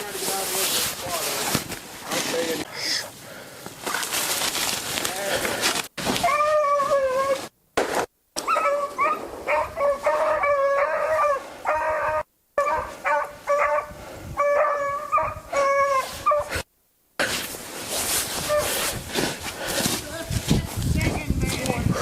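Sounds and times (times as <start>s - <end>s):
dogs baying: 8.4s - 16.6s.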